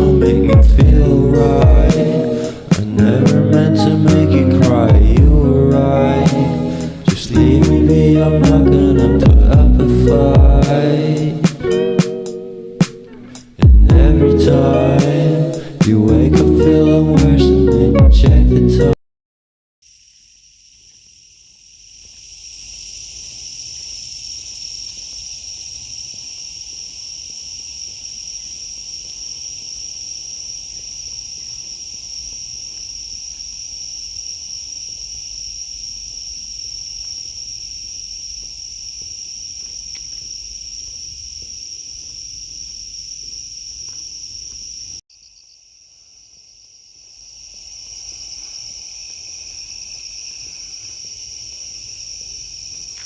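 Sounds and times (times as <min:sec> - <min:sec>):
insects high-pitched trill: 0:00.0 - 0:09.2, 0:19.8 - 0:53.0
faint pulsing insect calls: 0:01.3 - 0:04.2, 0:19.8 - 0:53.0.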